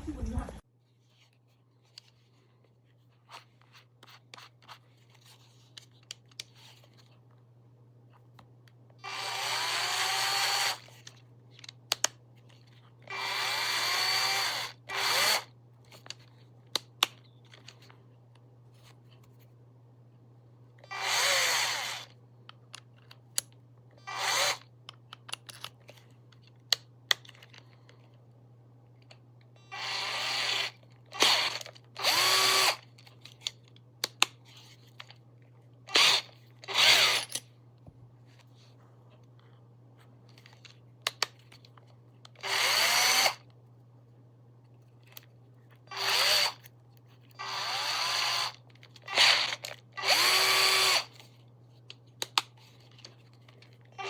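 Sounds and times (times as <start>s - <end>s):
cordless drill motor spinning: 9.0s - 11.0s, 13.0s - 15.5s, 20.8s - 22.2s, 24.0s - 24.7s, 29.7s - 32.9s, 35.9s - 37.4s, 42.4s - 43.5s, 45.9s - 46.7s, 47.4s - 51.2s.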